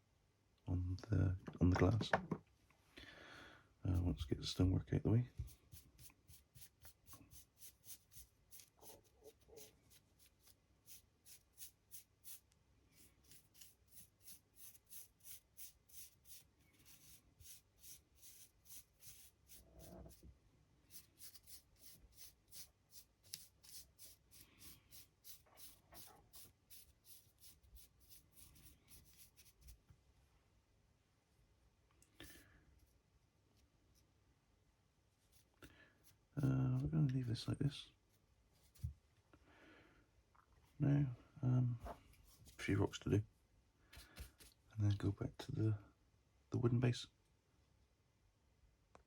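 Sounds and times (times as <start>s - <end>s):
paintbrush scratching: 5.4s - 20.3s, 20.9s - 29.8s.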